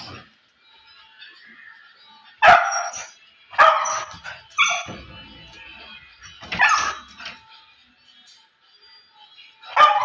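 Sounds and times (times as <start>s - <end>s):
dog barking: 2.4s - 4.9s, 6.5s - 7.1s, 9.7s - 10.0s.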